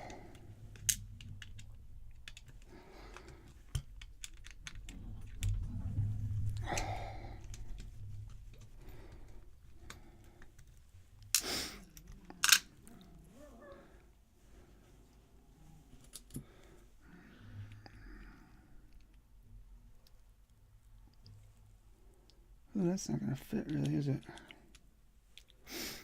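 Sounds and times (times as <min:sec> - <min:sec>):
light clicks of metal lock parts: 0:23.6 - 0:24.8.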